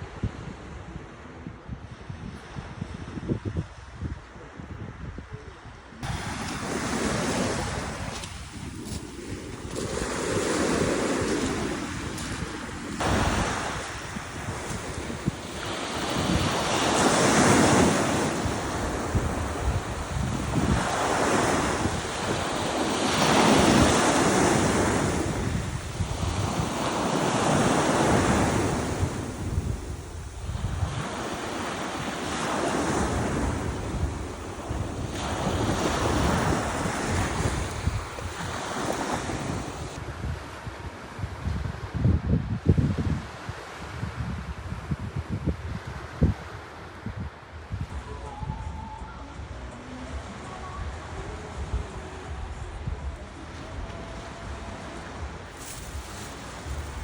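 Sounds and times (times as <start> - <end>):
wind on microphone: 0.0 - 57.0
sea waves breaking: 6.0 - 42.0, 47.9 - 57.0.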